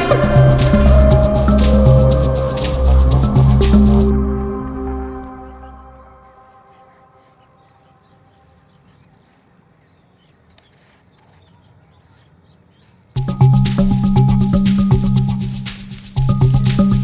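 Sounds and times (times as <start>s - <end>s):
music with shaker rhythm: 0.0s - 6.1s, 13.2s - 17.0s
small birds chirping: 5.5s - 17.0s.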